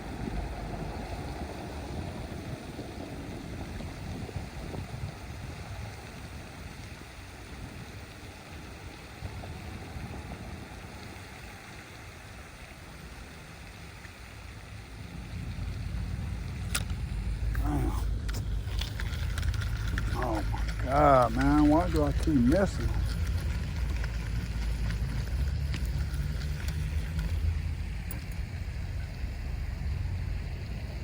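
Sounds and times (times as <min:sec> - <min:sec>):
wind buffeting microphone: 0:00.0 - 0:11.4.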